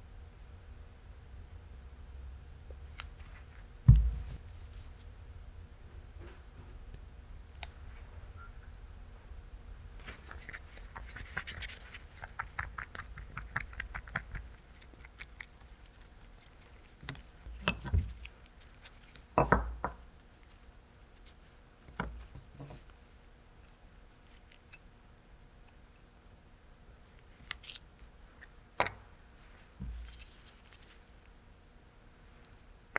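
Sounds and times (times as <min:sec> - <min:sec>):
heavier knocks: 0:03.9 - 0:04.4.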